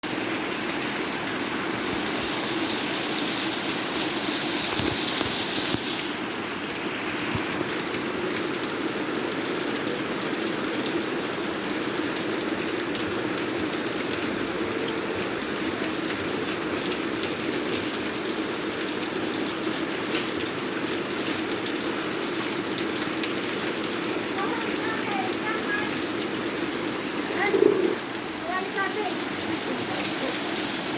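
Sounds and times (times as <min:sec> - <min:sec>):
rain pattering: 0:00.0 - 0:30.9
high hiss: 0:27.3 - 0:30.9.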